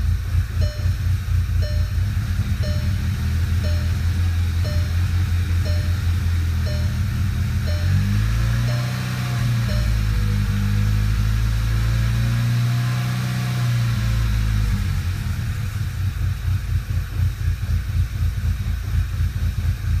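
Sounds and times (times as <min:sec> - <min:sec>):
car engine idling roughly: 0:00.0 - 0:12.4, 0:14.1 - 0:20.0.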